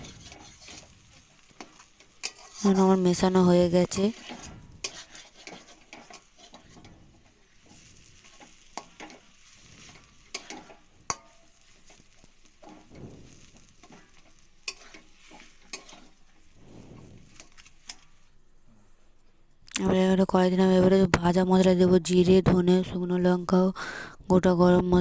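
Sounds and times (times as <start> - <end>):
spatula stirring mash: 0.0 - 18.4
faint sizzle: 0.0 - 25.0.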